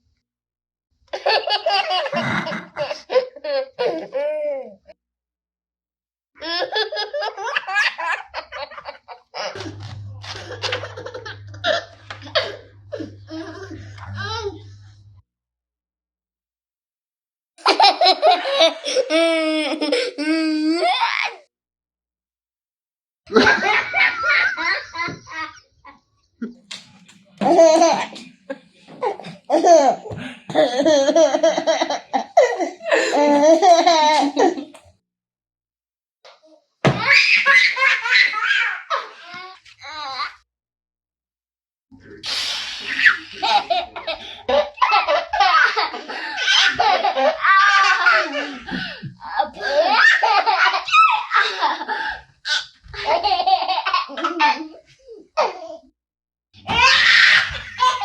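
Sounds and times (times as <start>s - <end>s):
baby giggling: 6.4s - 14.7s, 17.7s - 21.1s
baby laughing: 6.4s - 14.7s, 17.6s - 21.4s, 27.4s - 34.8s, 42.8s - 54.8s, 56.7s - 58.0s
low steady hum: 9.6s - 15.2s.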